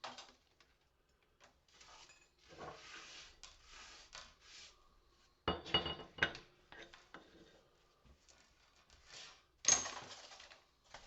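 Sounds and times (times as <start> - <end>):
porcelain clink: 5.5 - 6.4.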